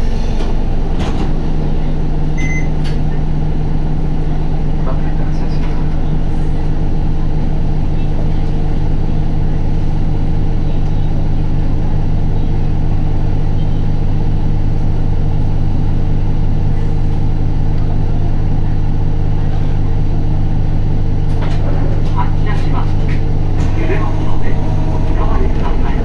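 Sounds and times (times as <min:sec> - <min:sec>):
diesel bus engine running: 0:00.0 - 0:26.0
tyre road noise: 0:21.4 - 0:26.0.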